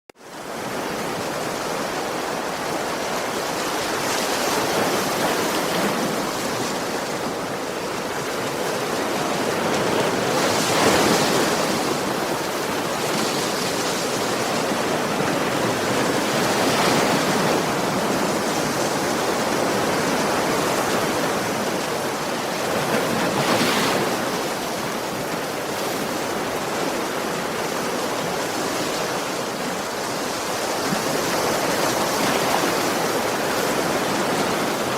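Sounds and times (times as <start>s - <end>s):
ocean waves breaking on shore: 0.2s - 34.9s.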